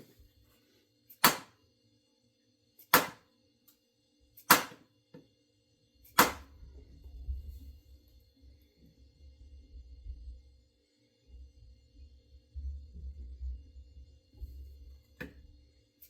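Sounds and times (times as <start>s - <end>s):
sharp strikes on axe handle: 1.2s - 1.5s, 2.9s - 3.2s, 4.5s - 4.8s, 6.2s - 6.4s.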